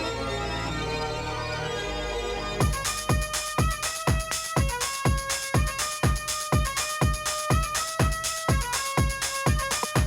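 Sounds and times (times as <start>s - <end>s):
bright synth melody: 0.0s - 4.7s
electronic dance music: 1.8s - 10.0s
kick drum: 2.6s - 10.0s.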